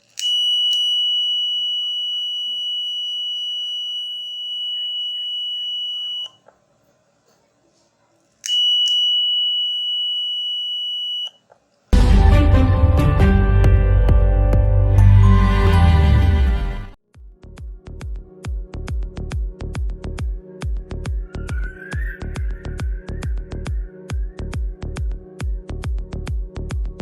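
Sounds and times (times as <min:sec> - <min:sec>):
loud background music: 0:12.0 - 0:21.8.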